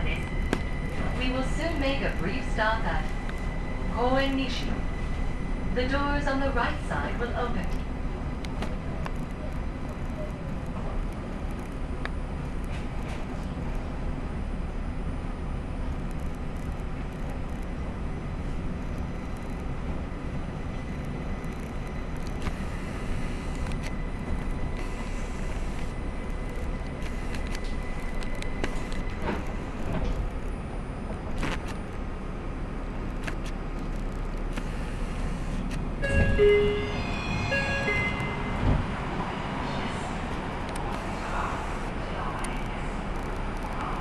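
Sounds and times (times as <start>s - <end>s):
train running rumble: 0.0s - 44.0s
door chime: 36.0s - 39.8s
faint high tone: 36.0s - 40.2s.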